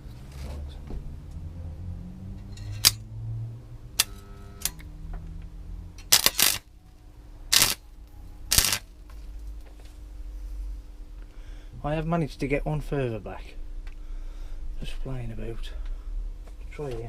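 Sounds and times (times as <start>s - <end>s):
low steady hum: 0.0s - 17.0s
arc welder bursts: 6.1s - 6.7s, 7.5s - 7.8s, 8.5s - 8.9s.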